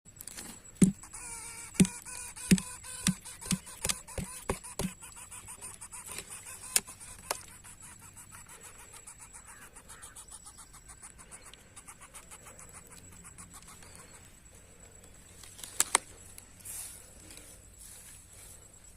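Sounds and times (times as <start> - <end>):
sharp knocks: 0.8 - 1.1, 1.7 - 5.0.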